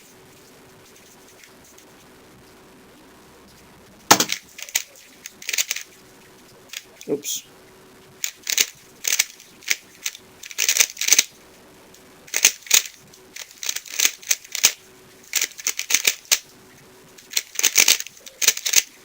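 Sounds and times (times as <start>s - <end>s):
puzzle cube clacking turns: 4.1s - 5.9s, 8.2s - 11.3s, 12.3s - 16.4s, 17.2s - 19.0s.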